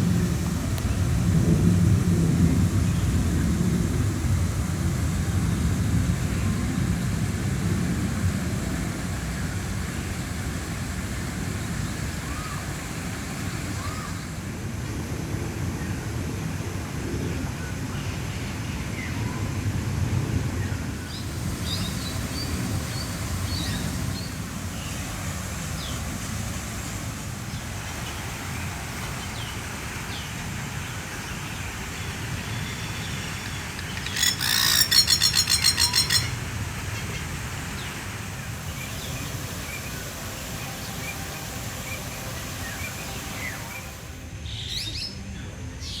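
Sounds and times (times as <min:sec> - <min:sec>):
birds chirping and whistling: 0:32.6 - 0:37.2
bird rattling call: 0:33.3 - 0:37.9.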